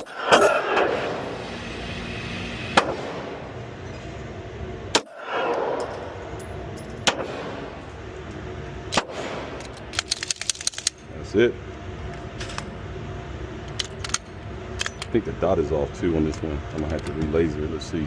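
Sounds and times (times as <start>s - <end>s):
pistol shots with echo: 2.8s - 3.5s, 7.0s - 7.8s, 8.9s - 9.6s.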